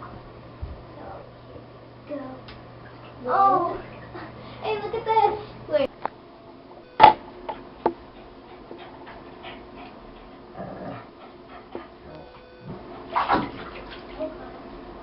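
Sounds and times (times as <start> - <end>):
sharp knock: 7.0 - 7.2.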